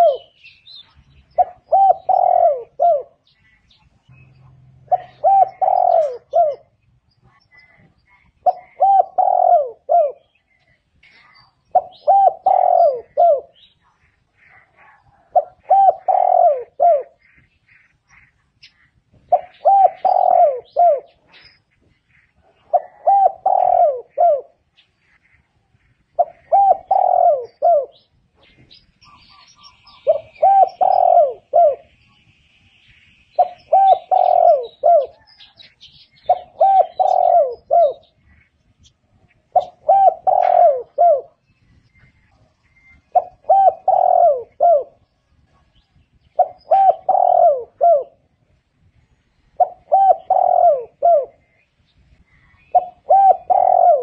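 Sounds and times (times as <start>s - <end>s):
dove cooing: 0.0s - 0.4s, 1.2s - 3.4s, 4.4s - 17.4s, 19.2s - 21.5s, 22.3s - 25.2s, 26.0s - 32.0s, 33.4s - 38.4s, 39.5s - 41.4s, 42.7s - 48.6s, 49.6s - 54.0s
faint small bird chirping: 17.0s - 40.6s, 51.4s - 53.8s.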